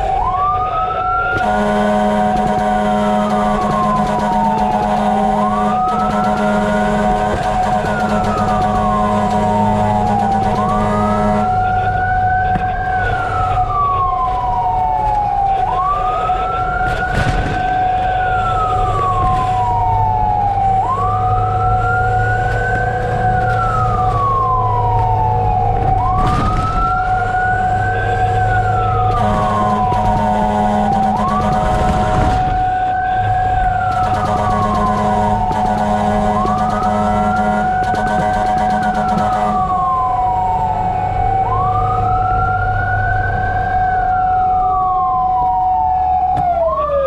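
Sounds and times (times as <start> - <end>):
steady constant tone: 0.0 - 21.0
fire truck siren wailing: 0.0 - 47.0
truck engine hum: 0.0 - 47.0.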